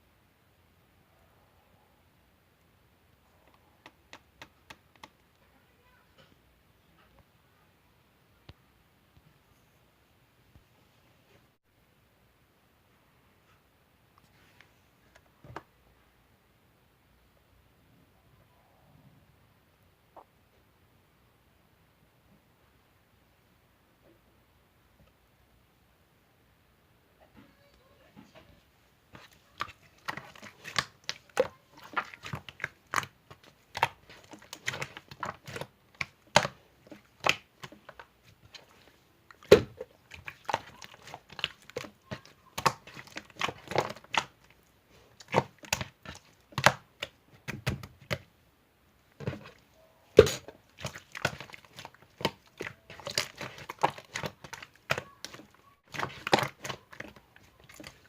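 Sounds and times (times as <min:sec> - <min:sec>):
slime squeezed popping and crackling: 0:29.2 - 0:48.2, 0:50.2 - 0:58.0.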